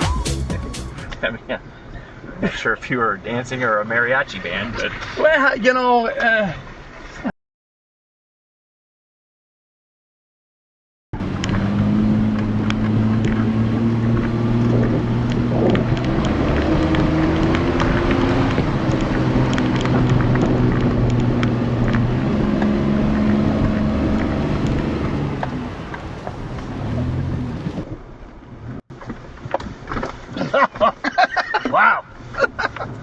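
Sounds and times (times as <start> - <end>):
off-road vehicle engine running: 11.2 - 27.8.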